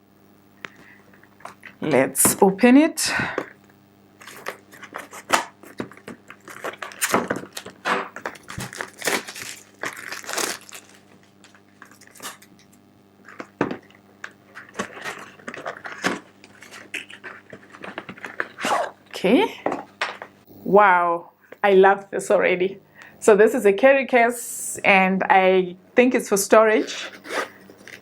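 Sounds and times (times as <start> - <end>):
packaging crinkling and rustling: 4.2 - 19.0.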